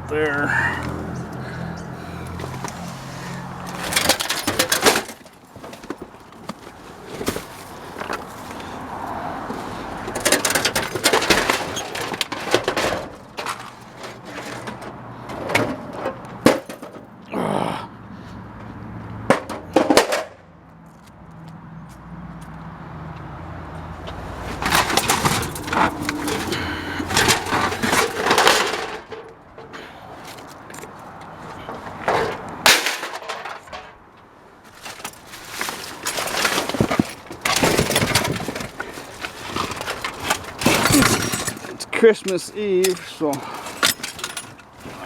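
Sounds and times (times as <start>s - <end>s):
scrap metal clattering in dumpster: 2.4s - 8.7s, 9.5s - 17.1s, 24.2s - 30.5s, 31.5s - 34.1s, 34.7s - 45.0s.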